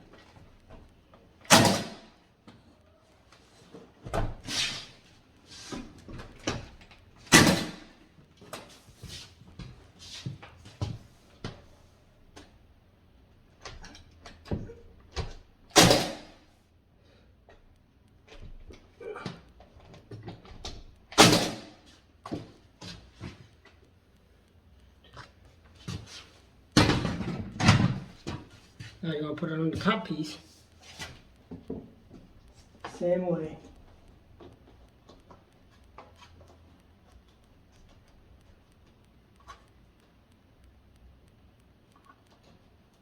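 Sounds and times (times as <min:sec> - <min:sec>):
nail gun shots into wood: 0:01.5 - 0:02.2, 0:07.3 - 0:08.0, 0:15.7 - 0:16.4, 0:21.1 - 0:21.8.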